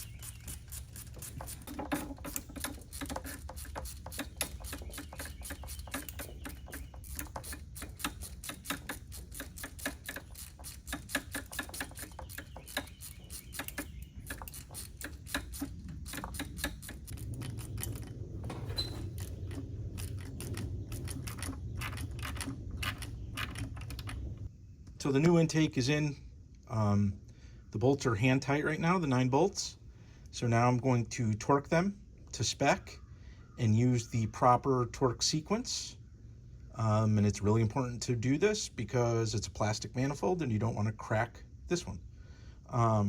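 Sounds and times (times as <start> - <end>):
hand ratchet clicking: 0.0 - 18.1.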